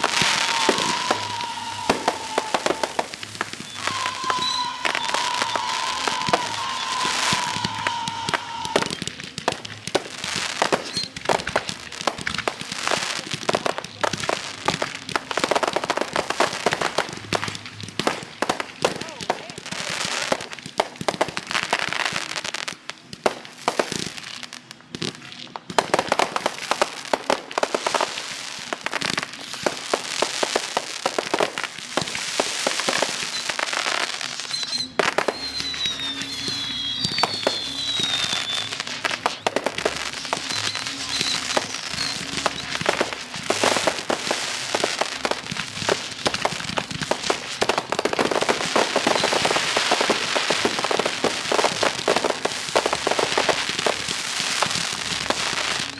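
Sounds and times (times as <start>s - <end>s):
firework whistles falling in pitch: 0.0s - 9.0s, 10.8s - 11.1s, 32.9s - 44.0s, 48.8s - 50.9s
fireworks bangs and crackling: 0.0s - 55.9s.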